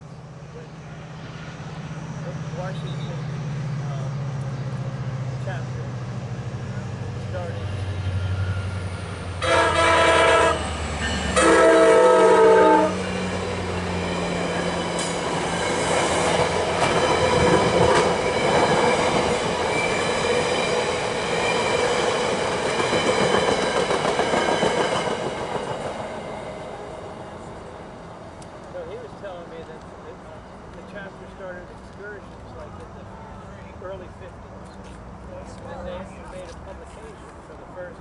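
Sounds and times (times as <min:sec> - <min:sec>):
locomotive horn blasts: 0:09.4 - 0:13.1
train wheels clattering on rail: 0:13.1 - 0:26.5.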